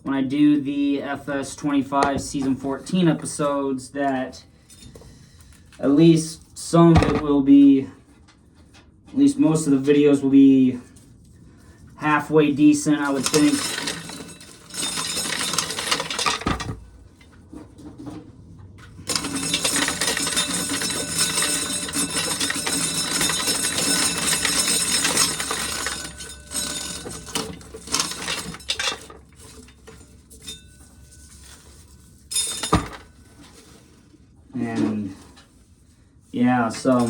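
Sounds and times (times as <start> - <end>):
corn kernels rattling into a pail: 12.9 - 16.8, 19.1 - 30.4.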